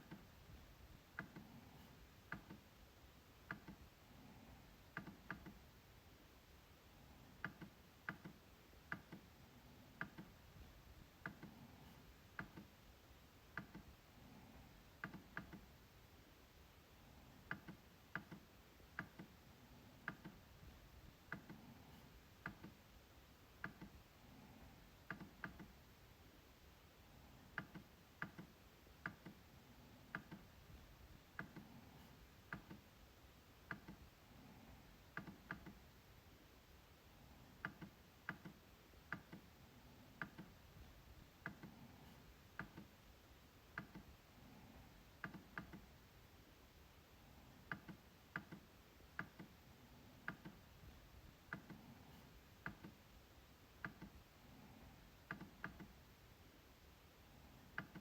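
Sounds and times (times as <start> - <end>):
trackpad clicks: 4.9 - 5.6, 23.6 - 24.0, 27.5 - 29.4, 30.1 - 30.5, 35.1 - 35.8, 37.6 - 39.5, 43.7 - 44.1, 47.7 - 49.6, 53.8 - 54.2, 55.3 - 56.0.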